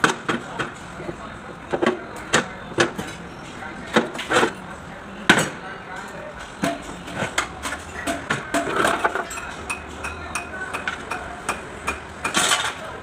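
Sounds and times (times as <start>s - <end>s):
metal tools clinking and knocking: 7.6s - 10.2s.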